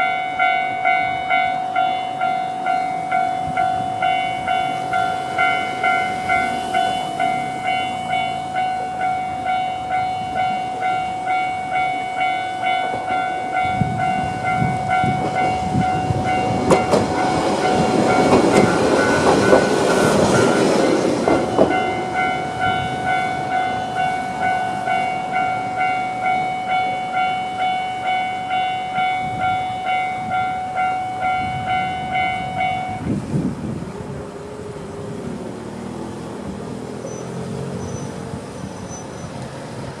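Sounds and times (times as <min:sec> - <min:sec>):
level crossing alarm ringing: 0:00.0 - 0:33.2
train wheels clattering over rail joints: 0:14.0 - 0:25.4.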